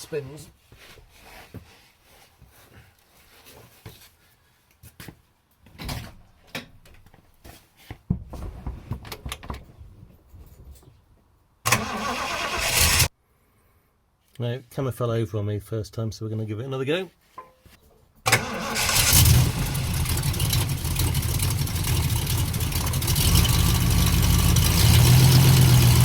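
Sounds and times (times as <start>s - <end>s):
clunks and knocks: 8.1s - 11.0s
car engine starting and running: 11.7s - 13.1s, 18.3s - 26.0s.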